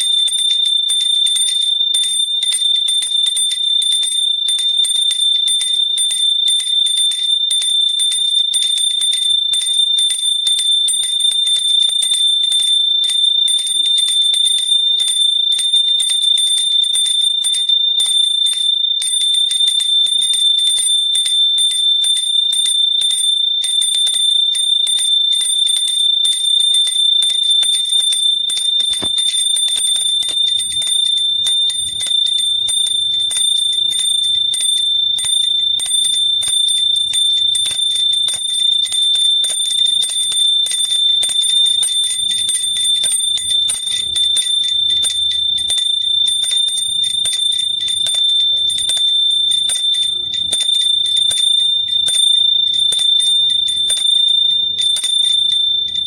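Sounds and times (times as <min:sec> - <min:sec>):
small hand bell ringing rapidly: 0:00.0 - 0:56.0.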